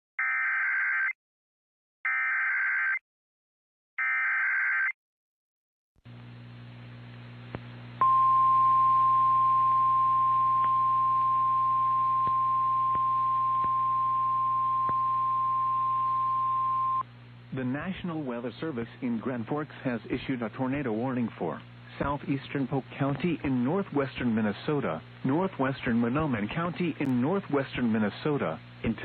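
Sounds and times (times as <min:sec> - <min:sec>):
receiver hiss and hum: 0:06.1 - 0:29.0
steady warning alarm tone: 0:08.0 - 0:17.0.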